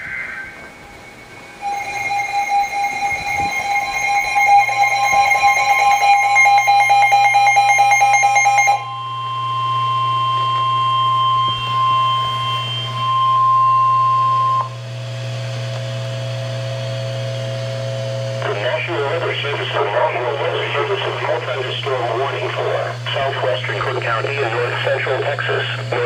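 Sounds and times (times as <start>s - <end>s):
fast-pulsing two-tone alert signal: 0.0s - 14.8s
steady alert tone: 0.2s - 14.7s.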